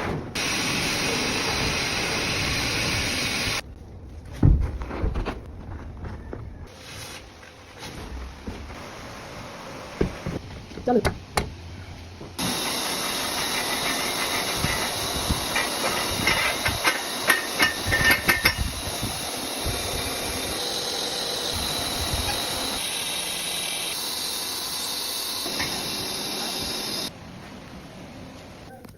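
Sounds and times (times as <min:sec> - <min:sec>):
welding arc hissing: 0:00.4 - 0:03.6, 0:12.4 - 0:27.1.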